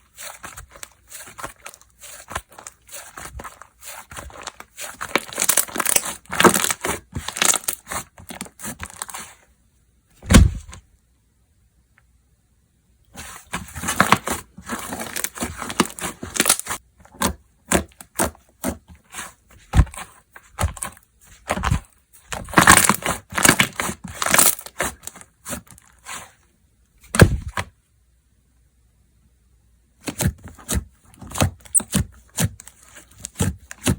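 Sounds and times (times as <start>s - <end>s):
dull thump: 10.2s - 10.8s, 27.1s - 27.6s.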